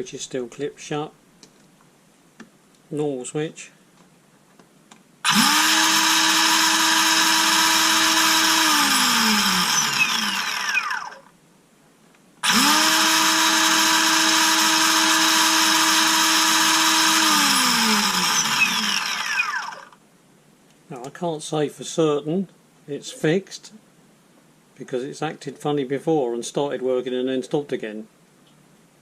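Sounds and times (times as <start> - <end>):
cordless chainsaw whining: 5.2 - 11.3, 12.4 - 20.0.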